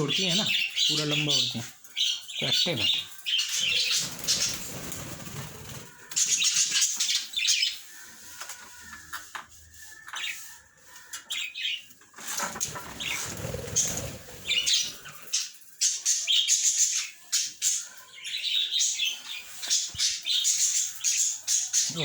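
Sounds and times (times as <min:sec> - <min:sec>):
budgerigar wings fluttering: 0:03.6 - 0:06.8, 0:12.5 - 0:15.1.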